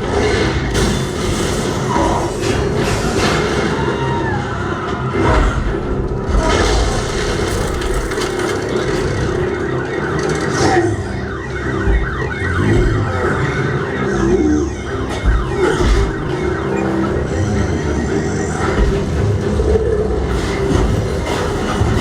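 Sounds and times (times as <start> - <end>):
wailing siren-like sliding tones: 0.0 - 22.0
deep bass thumps: 11.5 - 13.5, 14.7 - 16.4.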